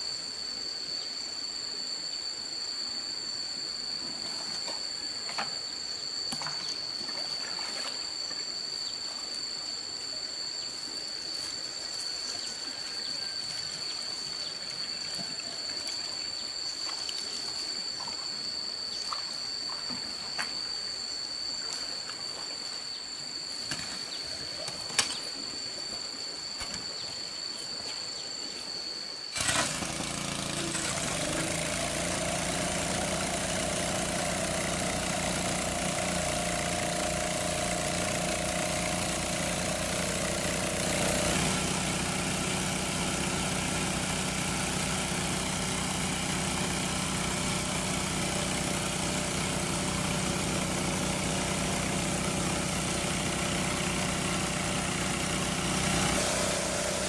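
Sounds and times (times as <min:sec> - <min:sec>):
high-pitched whine: 0:00.0 - 0:57.0
engine running: 0:29.3 - 0:57.0.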